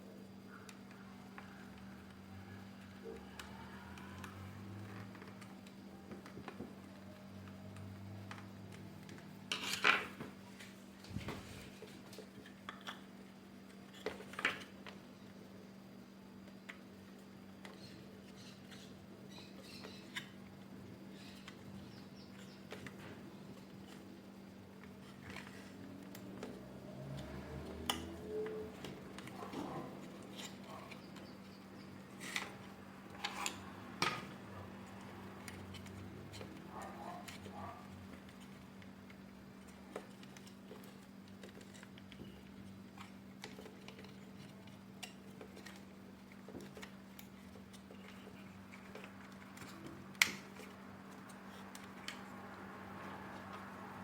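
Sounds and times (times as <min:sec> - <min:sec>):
faint steady hum: 0:00.0 - 0:54.0
plastic parts scraping: 0:24.8 - 0:52.4.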